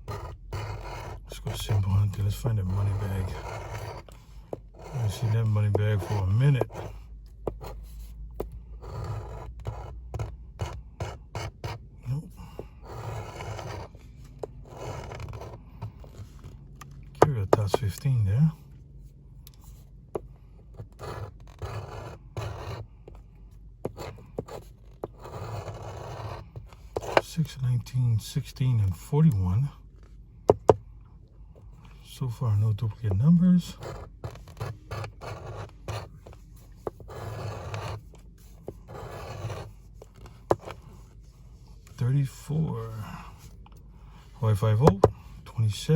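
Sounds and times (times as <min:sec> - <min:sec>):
coin scraping lottery ticket: 0:00.0 - 0:07.0, 0:12.8 - 0:14.0, 0:14.6 - 0:16.2, 0:24.0 - 0:27.4, 0:32.7 - 0:38.1, 0:38.9 - 0:41.0.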